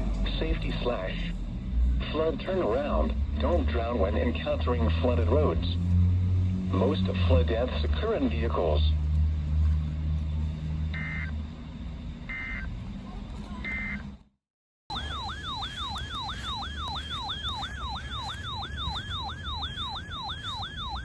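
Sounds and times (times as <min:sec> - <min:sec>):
siren-like alert tone: 0:14.9 - 0:21.0
two-tone data bursts: 0:14.9 - 0:21.0.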